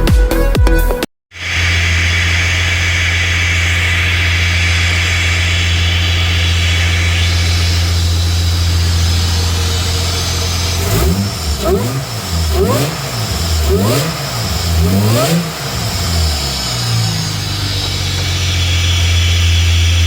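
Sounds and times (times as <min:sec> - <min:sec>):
steady hiss: 0:01.4 - 0:10.8
car engine idling: 0:01.4 - 0:20.0.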